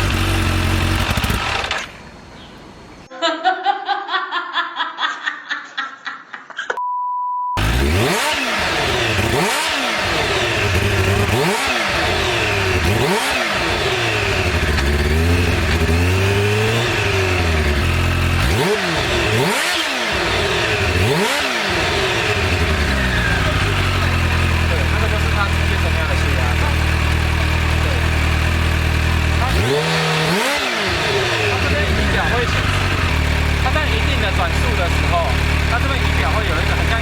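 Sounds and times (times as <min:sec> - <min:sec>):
motorcycle engine revving: 0:00.0 - 0:02.5, 0:07.6 - 0:37.0
short steady beep: 0:06.8 - 0:07.6.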